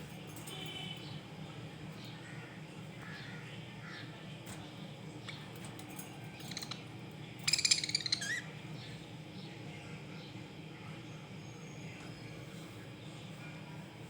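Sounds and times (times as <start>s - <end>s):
harsh rapid bird chatter: 0.4s - 10.5s
budgerigars chirping: 7.5s - 8.5s.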